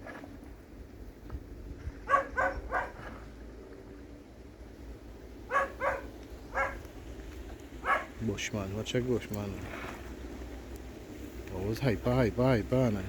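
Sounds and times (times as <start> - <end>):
dog barking: 2.0 - 3.1, 5.5 - 6.8, 7.8 - 8.2.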